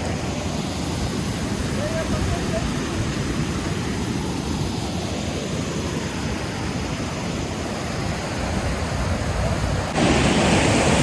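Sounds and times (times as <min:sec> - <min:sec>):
waterfall rushing: 0:09.8 - 0:11.0.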